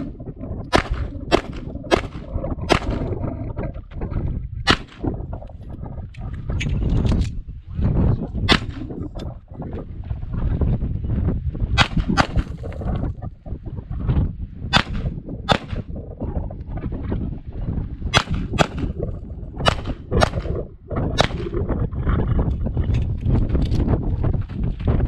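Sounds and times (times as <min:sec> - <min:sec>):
pistol shots: 0:00.7 - 0:03.0, 0:04.7 - 0:05.0, 0:08.5 - 0:08.9, 0:11.8 - 0:12.5, 0:14.8 - 0:15.9, 0:18.2 - 0:19.0, 0:19.7 - 0:20.5.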